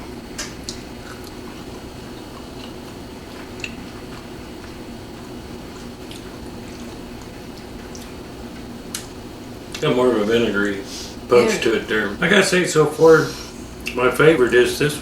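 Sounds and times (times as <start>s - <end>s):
low room hum: 0.0s - 15.0s
people chewing food: 0.4s - 12.2s.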